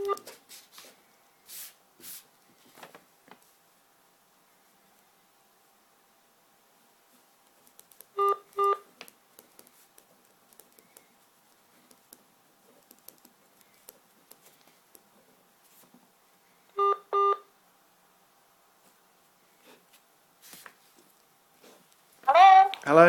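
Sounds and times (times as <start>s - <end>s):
telephone hold beeps: 8.2s - 8.8s, 16.8s - 17.5s.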